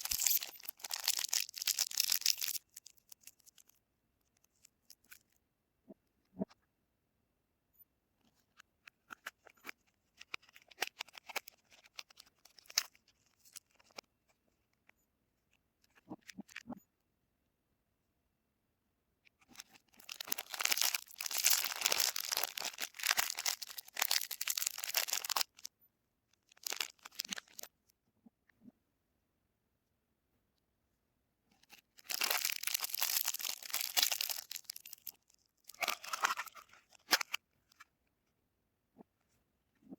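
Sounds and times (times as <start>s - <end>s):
wrappers tearing and crinkling: 0.0s - 3.7s, 19.6s - 25.7s, 26.5s - 27.7s, 32.0s - 37.4s.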